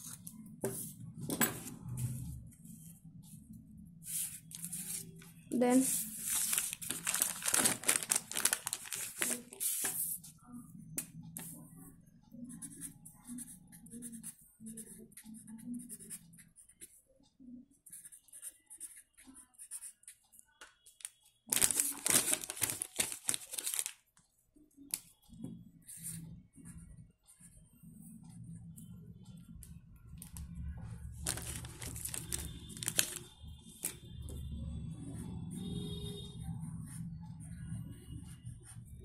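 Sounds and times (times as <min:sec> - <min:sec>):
paper and card rustling: 0:04.2 - 0:10.2, 0:21.5 - 0:24.0, 0:31.2 - 0:34.0.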